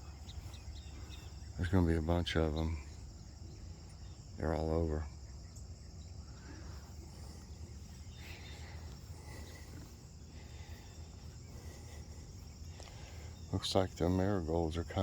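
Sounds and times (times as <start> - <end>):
crickets chirping: 0.0 - 15.0
faint low rumble: 0.0 - 15.0.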